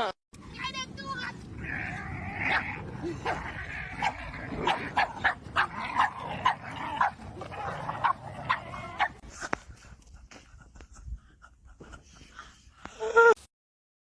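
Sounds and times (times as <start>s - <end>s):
dog barking: 4.0s - 9.2s.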